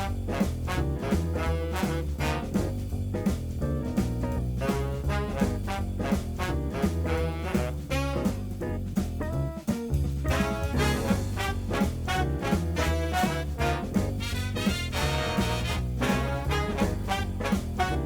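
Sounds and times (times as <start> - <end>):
upbeat swing jazz with brass: 0.0 - 18.0.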